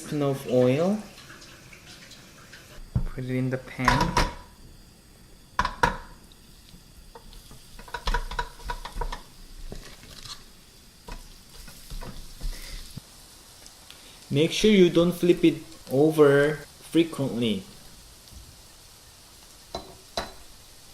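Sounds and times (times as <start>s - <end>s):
batter sizzling in a pan: 0.0s - 20.9s
utensil knocking and scraping a pan: 7.1s - 10.4s, 11.1s - 12.9s.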